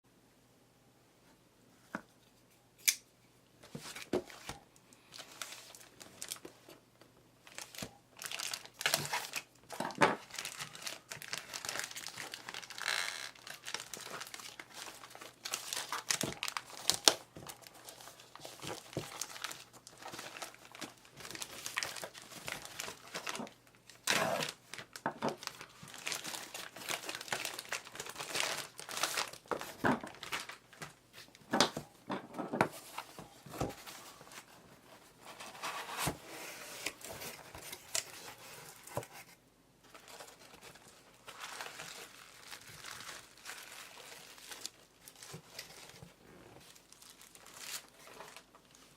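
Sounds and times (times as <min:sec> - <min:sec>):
wrapping crinkling and rustling: 0:03.6 - 0:48.9
packaging tearing: 0:07.5 - 0:30.8, 0:39.9 - 0:48.8.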